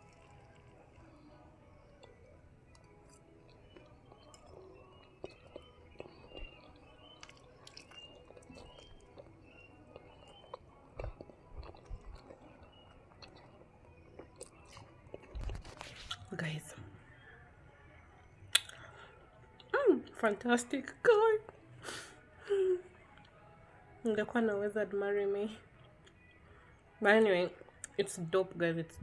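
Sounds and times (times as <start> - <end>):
person chewing food: 0.0 - 16.3, 18.5 - 19.7.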